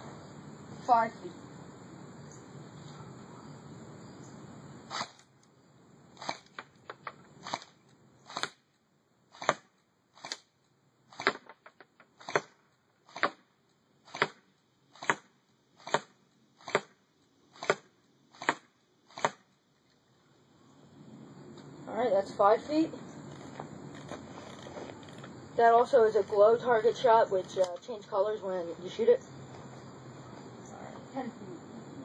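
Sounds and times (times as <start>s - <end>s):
airsoft rifle shots: 4.9s - 5.3s, 6.2s - 10.5s, 11.1s - 19.6s.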